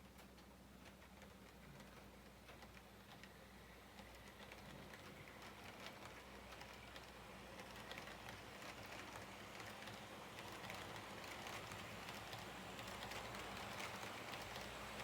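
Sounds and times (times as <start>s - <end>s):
wheels clicking on track: 0.1s - 15.0s
model train motor hum: 4.0s - 15.0s.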